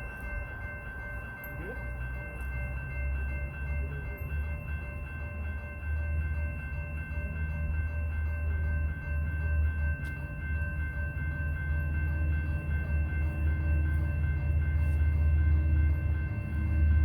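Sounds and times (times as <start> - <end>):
crossing bell ringing: 0.0 - 17.0
train rumbling: 0.0 - 17.0.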